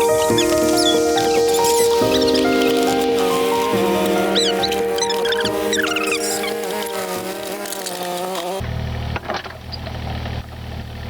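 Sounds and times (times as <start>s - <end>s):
high chirping glides: 0.0s - 8.6s.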